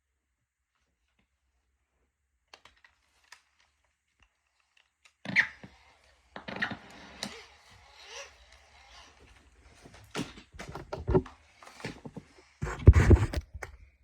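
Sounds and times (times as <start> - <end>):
sharp knocks and clicks: 10.5 - 11.3.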